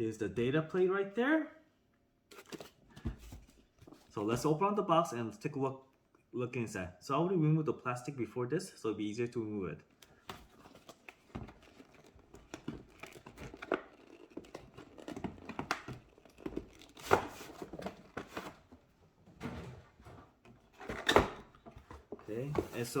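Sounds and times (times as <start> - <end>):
cardboard and plastic rustling: 2.3 - 4.5, 10.0 - 23.0.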